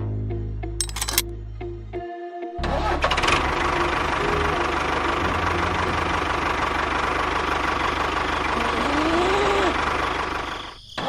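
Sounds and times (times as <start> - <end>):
engine idling: 3.2 - 10.7.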